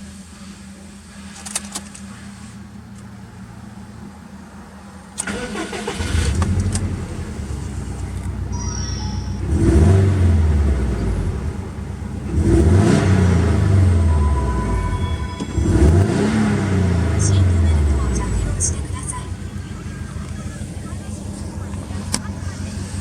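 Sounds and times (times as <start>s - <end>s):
car engine deep low rumble: 0.0s - 23.0s
car engine starting: 0.0s - 23.0s
engine revving blips: 8.5s - 23.0s.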